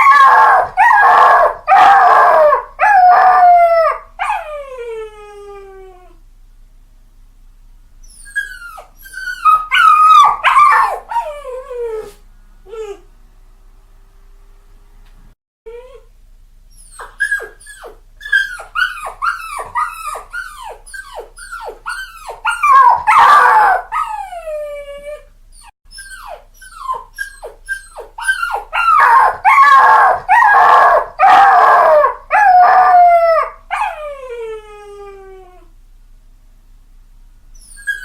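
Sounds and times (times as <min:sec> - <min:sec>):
puppy crying loudly: 0:00.0 - 0:04.6, 0:08.1 - 0:12.2, 0:16.8 - 0:24.4, 0:25.6 - 0:34.1, 0:37.6 - 0:38.0
puppy whimpering: 0:08.0 - 0:13.0, 0:16.8 - 0:24.4, 0:25.6 - 0:30.0, 0:37.6 - 0:38.0
puppy whining: 0:08.0 - 0:13.1, 0:16.7 - 0:35.7, 0:37.6 - 0:38.0.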